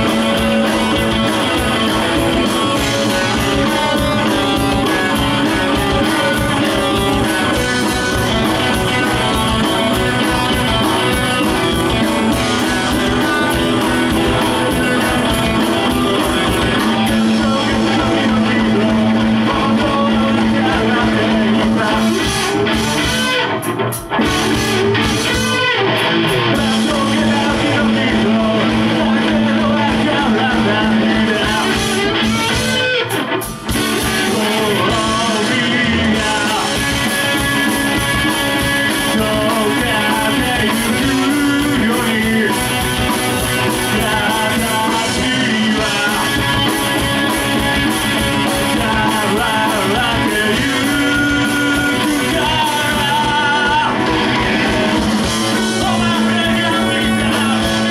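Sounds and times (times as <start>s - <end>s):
distorted electric guitar: 0.0s - 57.9s
drums: 0.0s - 57.9s
person singing: 0.0s - 57.9s.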